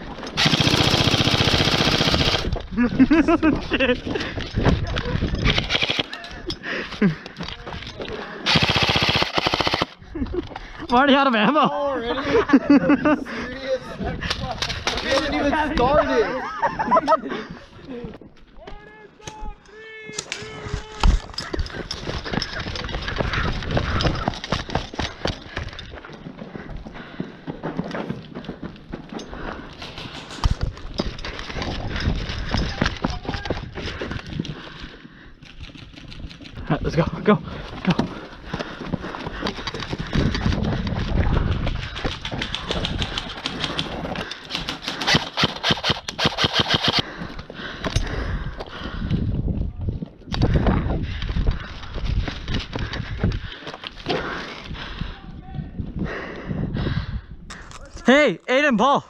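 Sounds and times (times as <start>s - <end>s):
airsoft guns firing: 0.4s - 2.5s, 5.5s - 6.1s, 8.4s - 10.0s, 42.0s - 47.0s.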